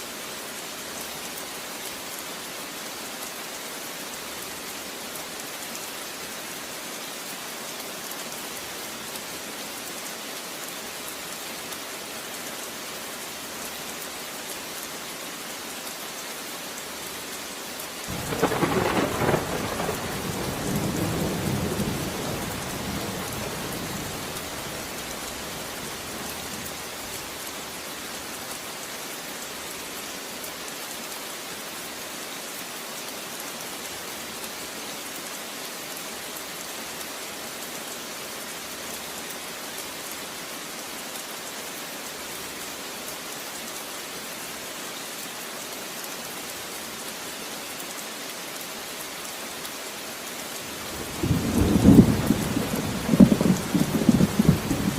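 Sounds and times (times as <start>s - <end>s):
steady rain falling: 0.0s - 54.9s
thunder rumble: 18.1s - 24.8s, 51.0s - 54.9s.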